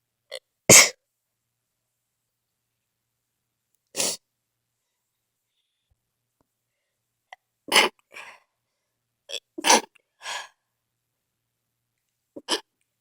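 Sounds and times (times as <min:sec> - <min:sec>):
person sneezing: 0:00.7 - 0:01.0, 0:04.0 - 0:04.2, 0:07.7 - 0:08.0, 0:09.6 - 0:10.5.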